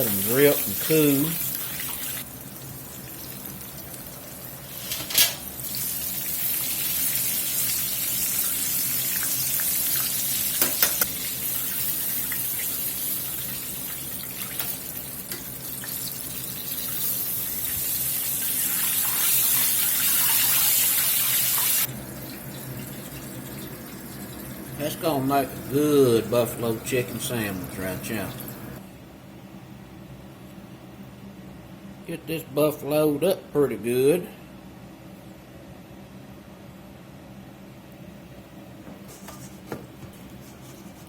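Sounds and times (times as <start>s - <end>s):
chicken sizzling in oil: 0.0s - 4.9s, 5.5s - 26.3s.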